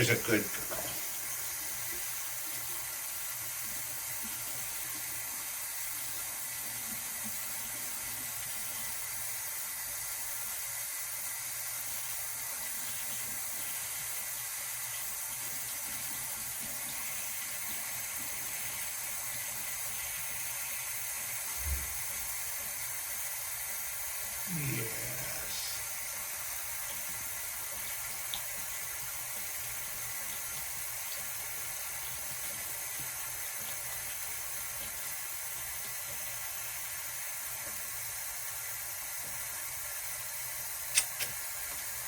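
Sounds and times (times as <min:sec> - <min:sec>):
tap running: 0:00.5 - 0:02.2.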